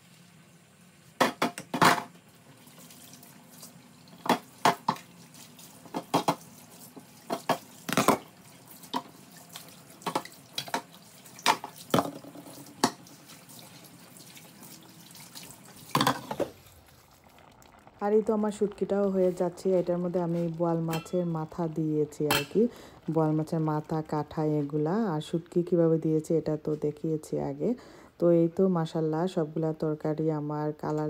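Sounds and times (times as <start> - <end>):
tap water running into sink: 1.2 - 17.0
pot lids clanking: 20.5 - 22.7.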